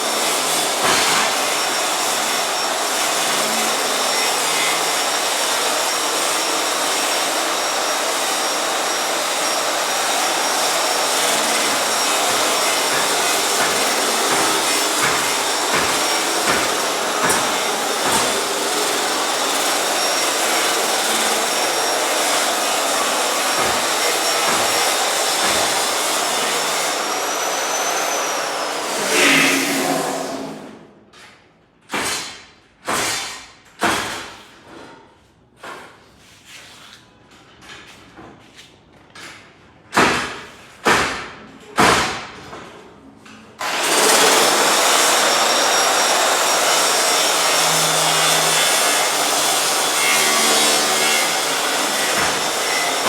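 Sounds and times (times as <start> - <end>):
washing machine whirring: 0.0 - 30.9.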